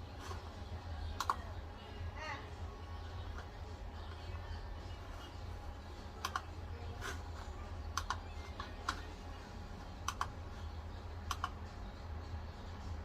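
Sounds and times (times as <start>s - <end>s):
steady low hum: 0.0s - 13.0s
keyboard clicks: 1.2s - 1.4s, 6.2s - 7.2s, 7.9s - 9.1s, 10.0s - 10.4s, 11.2s - 11.6s.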